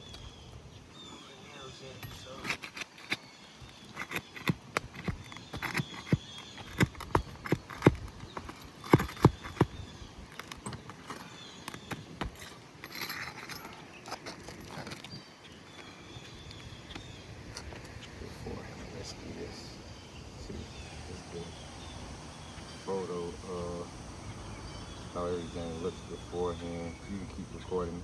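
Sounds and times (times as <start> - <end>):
knocks and taps on shingle roof: 2.1 - 12.6.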